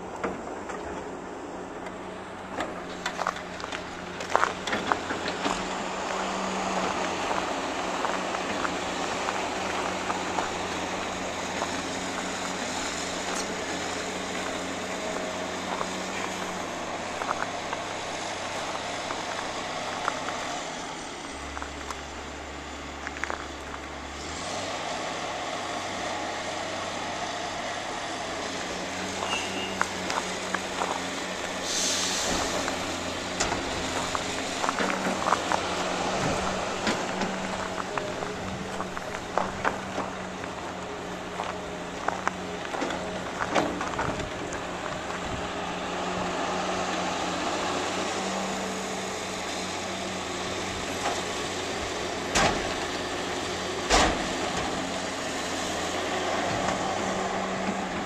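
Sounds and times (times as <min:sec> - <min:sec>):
diesel machinery running: 0:00.0 - 0:58.0
air hiss: 0:31.5 - 0:33.0.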